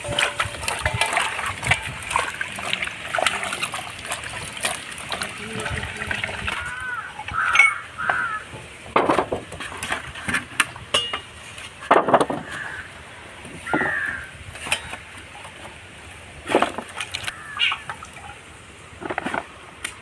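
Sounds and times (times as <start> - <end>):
metal utensils knocking on pot: 0.0 - 1.9, 6.5 - 8.2, 10.9 - 11.3.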